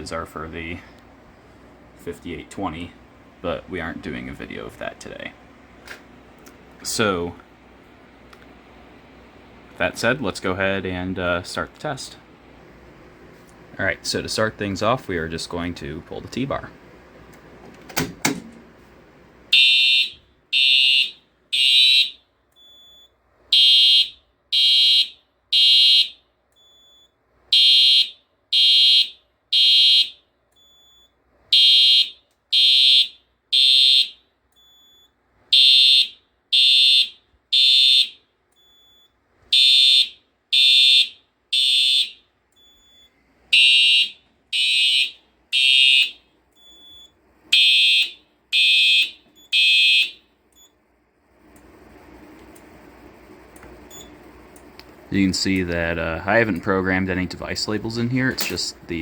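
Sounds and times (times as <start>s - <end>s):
fire alarm horn blasts: 19.5s - 50.3s.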